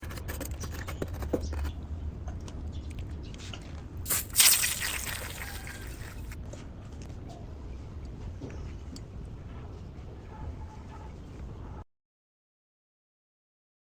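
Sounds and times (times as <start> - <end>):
hissing water spray: 4.1 - 6.3
wet handling sounds: 4.1 - 6.4.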